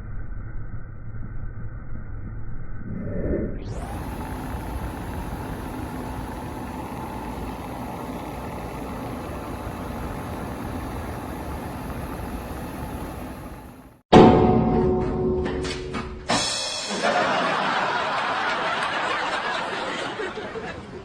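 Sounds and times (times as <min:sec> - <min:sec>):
window air conditioner humming: 0:03.7 - 0:14.0, 0:17.0 - 0:21.0.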